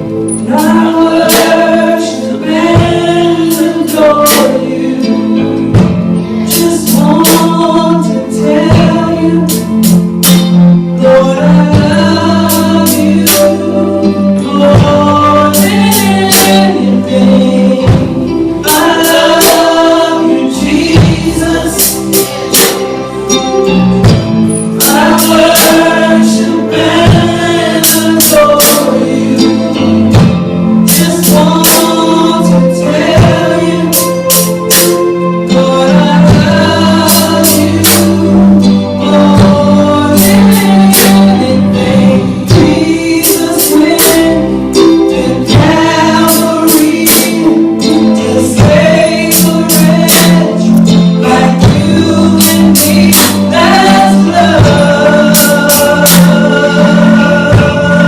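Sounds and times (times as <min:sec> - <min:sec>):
band playing: 0:00.0 - 0:58.0
voices singing worship song: 0:00.0 - 0:58.0
percussion strikes: 0:14.5 - 0:58.0.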